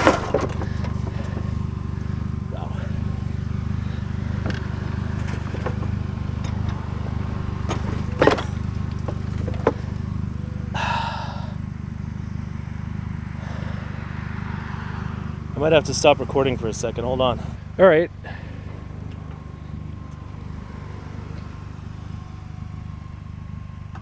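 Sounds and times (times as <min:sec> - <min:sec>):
metal scrap clinking and knocking: 0:00.0 - 0:01.5, 0:04.4 - 0:10.0
low engine drone: 0:00.0 - 0:24.0.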